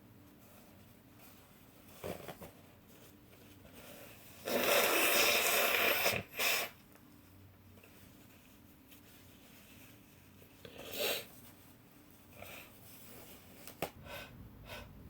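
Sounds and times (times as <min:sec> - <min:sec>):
woman blowing her nose: 0:04.4 - 0:06.8, 0:10.8 - 0:11.3.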